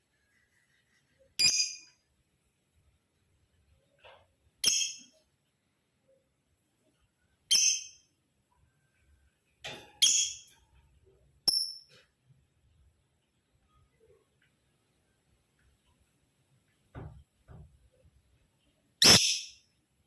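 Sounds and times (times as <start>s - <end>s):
lovebird chirping: 1.4s - 2.0s, 4.6s - 5.2s, 7.5s - 8.1s, 10.0s - 10.6s, 19.0s - 19.7s.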